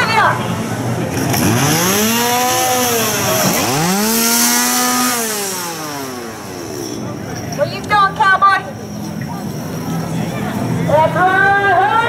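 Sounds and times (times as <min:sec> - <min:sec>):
chainsaw revving: 0:01.1 - 0:07.5.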